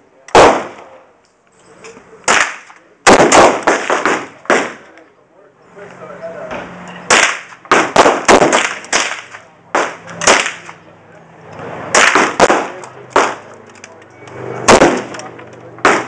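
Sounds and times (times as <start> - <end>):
gunshots: 0.3 - 1.0, 2.3 - 5.0, 7.1 - 10.8, 11.9 - 13.5, 14.6 - 16.0.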